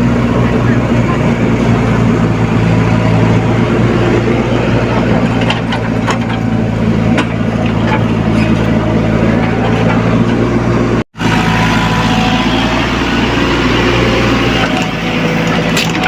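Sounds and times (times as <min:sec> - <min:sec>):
excavator diesel engine running: 0:00.0 - 0:16.0
digging knocks and clatters: 0:04.8 - 0:10.6, 0:14.5 - 0:16.0.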